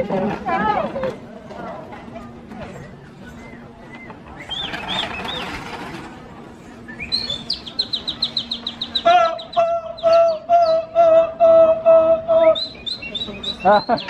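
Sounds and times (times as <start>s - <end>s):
repeated steady bird call: 3.0s - 5.9s, 6.8s - 14.0s.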